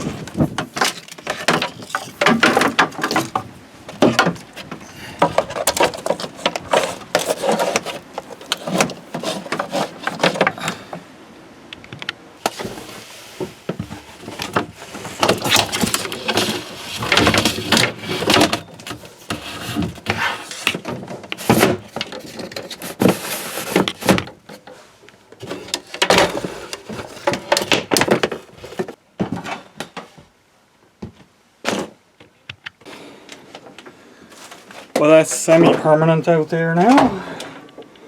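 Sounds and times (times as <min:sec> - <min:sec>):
extension cord rustling and bumping: 0:00.0 - 0:11.1, 0:12.0 - 0:29.5.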